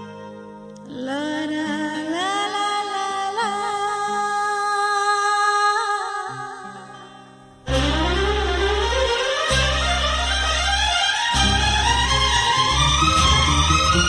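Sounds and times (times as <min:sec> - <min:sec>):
soft bass line: 0:07.7 - 0:14.0.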